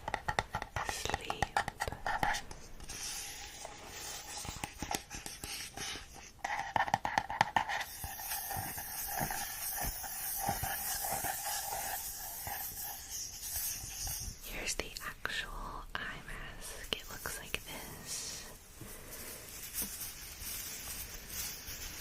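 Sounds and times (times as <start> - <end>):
soft hiss: 7.8 - 22.0.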